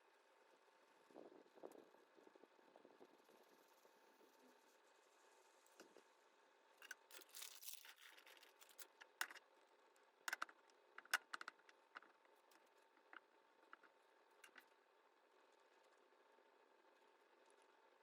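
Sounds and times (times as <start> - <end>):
utensils clicking and tapping: 10.3 - 14.6.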